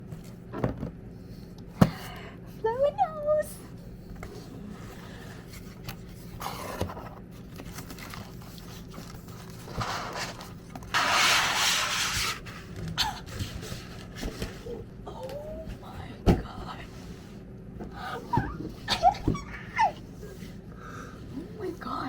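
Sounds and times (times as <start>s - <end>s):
parcel rubbing and scraping: 8.6s - 12.8s.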